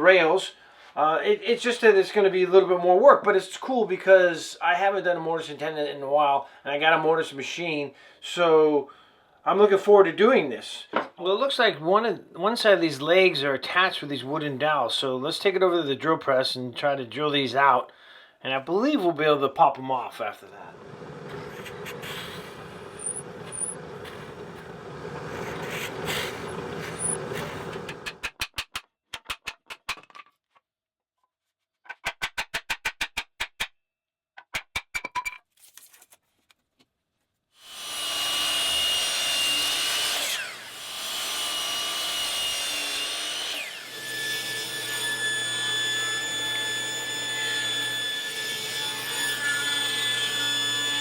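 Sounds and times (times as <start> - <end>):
drill press motor humming: 20.6 - 28.2
machine high whine: 20.6 - 28.2.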